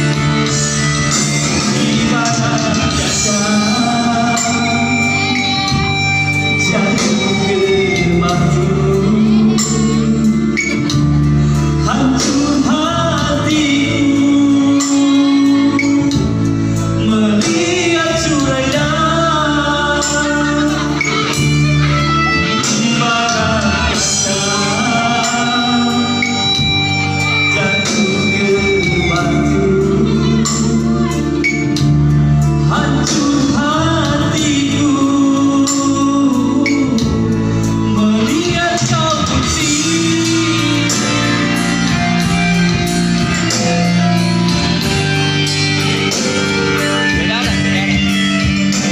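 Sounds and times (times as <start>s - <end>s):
guitar: 0.0s - 48.9s
person singing melody: 0.0s - 48.9s
steady bass line: 0.0s - 48.9s.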